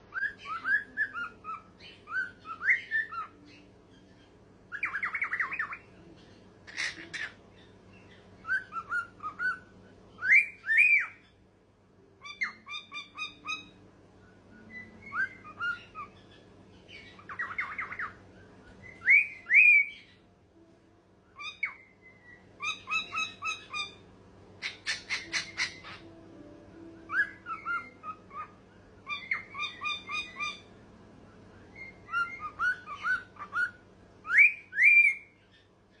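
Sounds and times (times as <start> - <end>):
cockatiel whistling and chirping: 0.1 - 3.6, 4.7 - 5.8, 8.1 - 11.3, 12.2 - 20.2, 21.4 - 24.0, 24.6 - 26.0, 27.1 - 30.7, 31.7 - 35.6
raspy bird calls: 6.6 - 11.3, 12.2 - 13.8, 14.6 - 20.2, 21.4 - 26.1, 27.1 - 30.7, 31.4 - 36.0.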